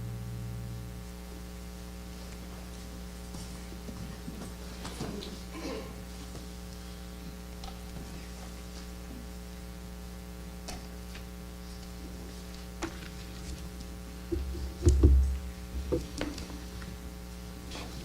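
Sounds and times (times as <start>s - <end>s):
electrical mains hum: 0.0s - 18.0s
deep thumps and knocks: 14.3s - 16.4s.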